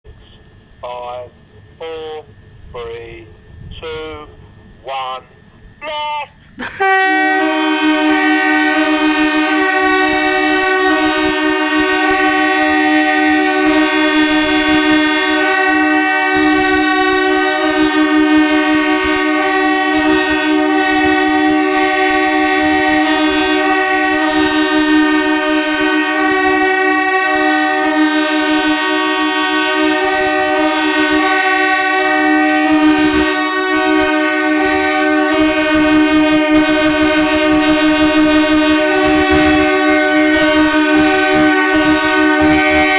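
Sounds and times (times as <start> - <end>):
train horns blasting: 0.8 - 42.9.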